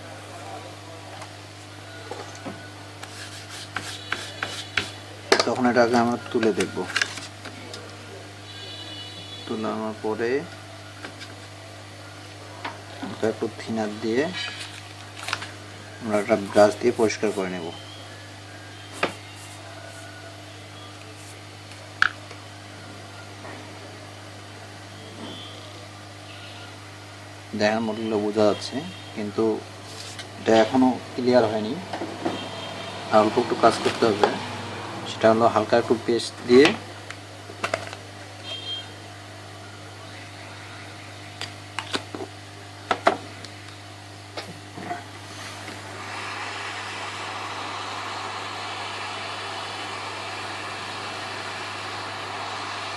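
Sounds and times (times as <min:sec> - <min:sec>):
low electrical hum: 0:00.0 - 0:52.9
steady low hum: 0:43.3 - 0:52.9.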